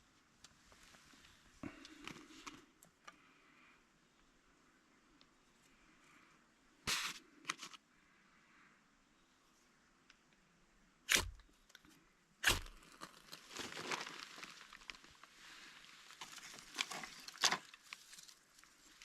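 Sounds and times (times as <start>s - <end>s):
wood crunching and splintering: 11.1s - 11.5s, 12.4s - 15.1s
wood cracking: 12.4s - 15.1s.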